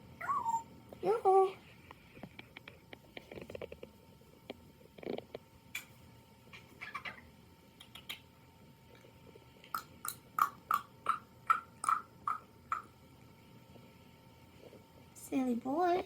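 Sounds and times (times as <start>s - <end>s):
bird clicking: 7.8s - 8.3s.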